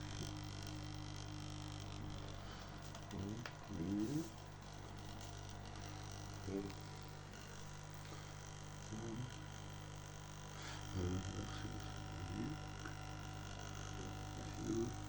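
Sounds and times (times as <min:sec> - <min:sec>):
electrical mains hum: 0:00.0 - 0:15.0
short pitched buzzes: 0:00.0 - 0:15.0.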